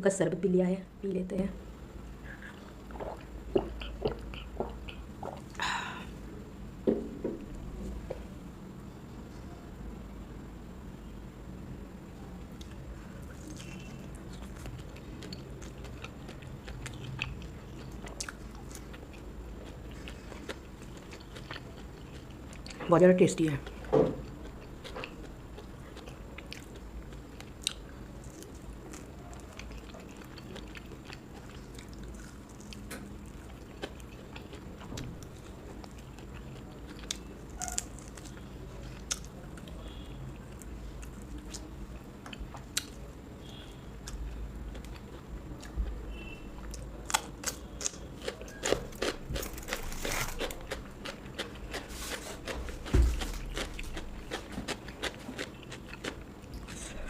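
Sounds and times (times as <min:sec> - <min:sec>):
person chewing food: 0:02.3 - 0:05.9, 0:12.6 - 0:22.8, 0:23.6 - 0:39.8, 0:40.4 - 0:57.0
crisp crunches: 0:48.6 - 0:54.4
low thump: 0:52.9 - 0:53.6.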